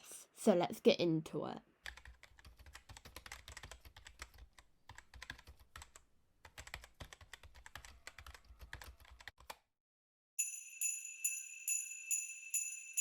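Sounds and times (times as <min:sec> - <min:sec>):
fast typing on keyboard: 0:01.8 - 0:09.6.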